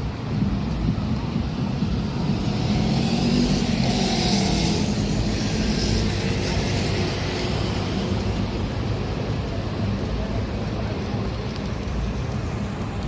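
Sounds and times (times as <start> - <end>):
constant low traffic rumble: 0.0 - 13.0
car passing by: 2.1 - 8.8.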